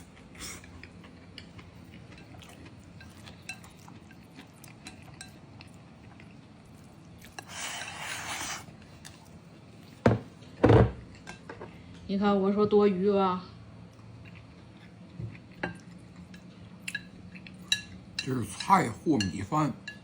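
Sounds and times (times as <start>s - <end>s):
chewing: 0.0s - 10.0s, 13.9s - 18.7s
utensils clinking on dish: 16.9s - 20.0s.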